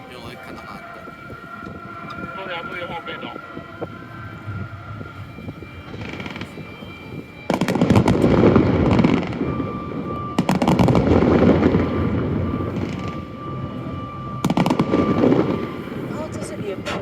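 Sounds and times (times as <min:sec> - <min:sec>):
fireworks crackling bangs: 0:05.6 - 0:09.7, 0:10.3 - 0:13.4, 0:14.4 - 0:16.5.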